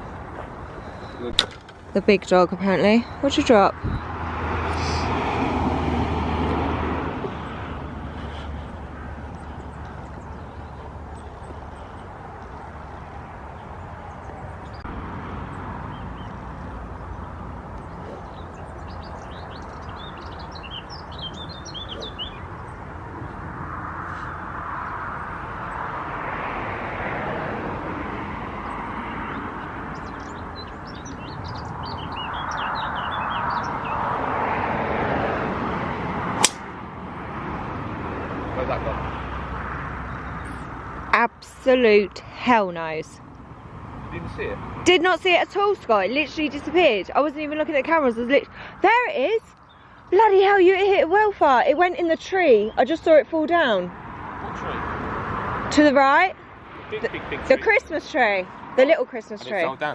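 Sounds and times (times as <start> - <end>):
outdoor rushing noise: 0.0 - 41.6
small birds chirping: 7.2 - 25.8, 28.6 - 34.2, 40.0 - 40.9, 42.8 - 53.8.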